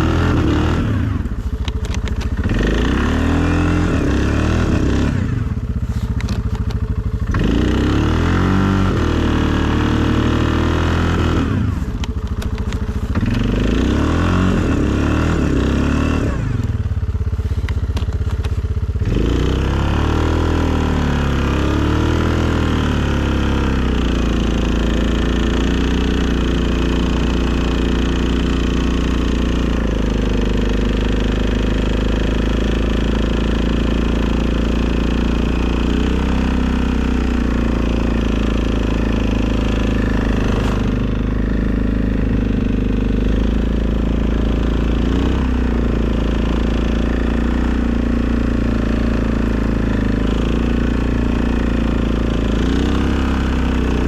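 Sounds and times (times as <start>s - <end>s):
atv engine revving under load: 0.0s - 54.0s.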